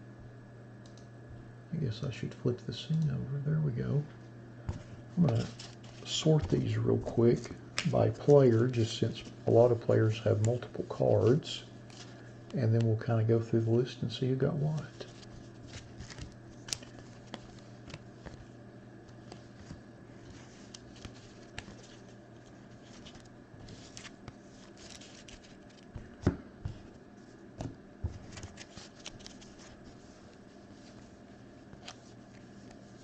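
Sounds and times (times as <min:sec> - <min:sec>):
steady low hum: 0:00.0 - 0:33.0
cards clicking and sliding: 0:14.7 - 0:22.1, 0:22.8 - 0:26.8.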